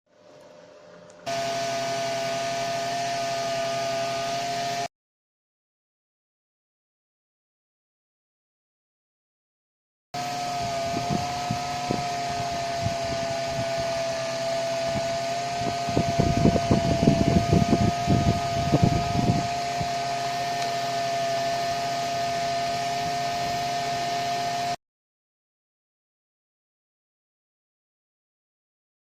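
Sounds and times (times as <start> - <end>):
small motor whining: 1.2 - 4.9, 10.2 - 24.8
low rumbling: 10.4 - 20.1.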